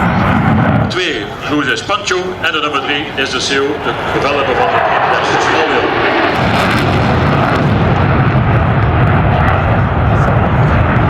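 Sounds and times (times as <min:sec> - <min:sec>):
plane engine roaring: 0:00.0 - 0:11.0.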